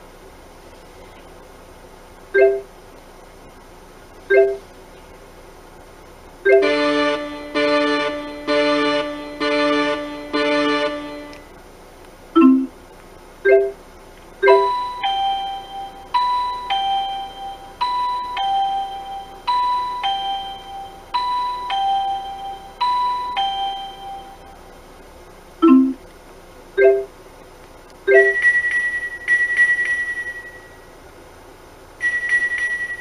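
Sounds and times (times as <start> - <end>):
short beeps: 2.4 - 2.7, 4.3 - 4.6, 12.4 - 12.7, 14.4 - 24.6, 25.6 - 26.0, 28.1 - 30.9, 32.0 - 33.0
two-note electronic chime: 6.5 - 11.4, 14.4 - 24.6, 25.6 - 26.0.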